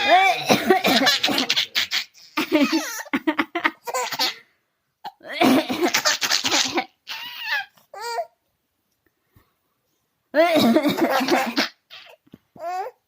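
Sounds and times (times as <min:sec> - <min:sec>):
woman fake coughing: 0:00.0 - 0:01.4, 0:05.1 - 0:06.0, 0:10.4 - 0:11.6
baby laughing: 0:00.0 - 0:04.5, 0:05.1 - 0:08.2, 0:10.9 - 0:12.9.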